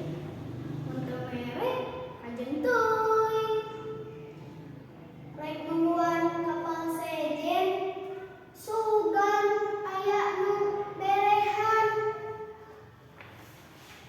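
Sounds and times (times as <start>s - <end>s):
child singing: 2.4s - 3.9s, 8.6s - 12.4s.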